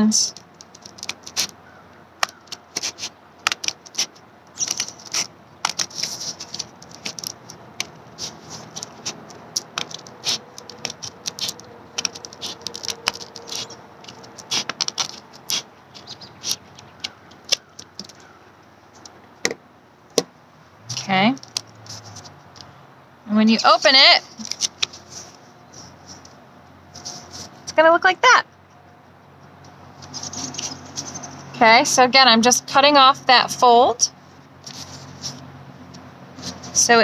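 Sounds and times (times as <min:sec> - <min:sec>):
scissors cutting paper: 0:00.3 - 0:01.6, 0:02.2 - 0:18.2
paper rustling: 0:00.3 - 0:18.4, 0:21.4 - 0:22.6, 0:23.6 - 0:27.7, 0:30.0 - 0:31.4, 0:34.6 - 0:35.5, 0:36.4 - 0:36.9.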